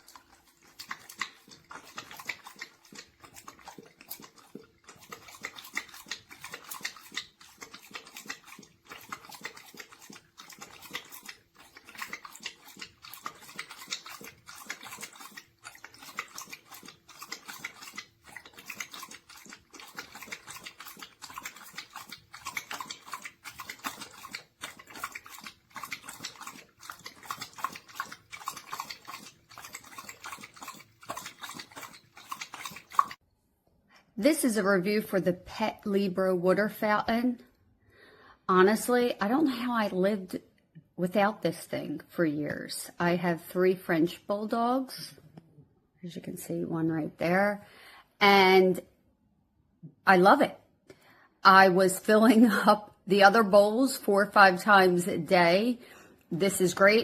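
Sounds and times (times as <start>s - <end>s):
dog lapping water: 0.0s - 33.2s.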